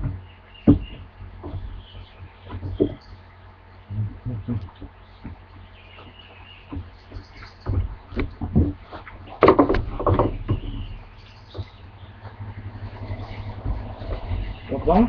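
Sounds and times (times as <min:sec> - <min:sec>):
puppy bumping and knocking: 0:00.0 - 0:03.0, 0:09.4 - 0:10.9
puppy scuffling: 0:04.8 - 0:15.0.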